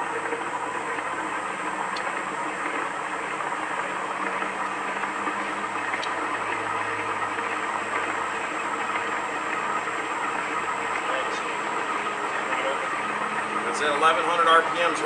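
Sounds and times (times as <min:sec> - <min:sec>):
floor grinder whirring: 0:00.0 - 0:15.0
high whine: 0:00.0 - 0:15.0.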